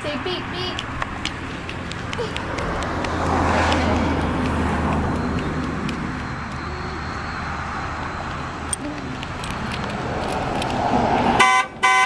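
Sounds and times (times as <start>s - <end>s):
road traffic noise: 0.0s - 12.0s
car horn honking: 11.4s - 12.0s.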